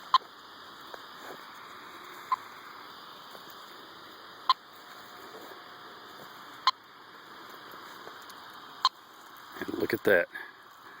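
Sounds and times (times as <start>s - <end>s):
steady hiss: 0.0s - 11.0s
receiver chirps: 2.1s - 2.8s, 4.4s - 4.7s, 8.8s - 9.0s.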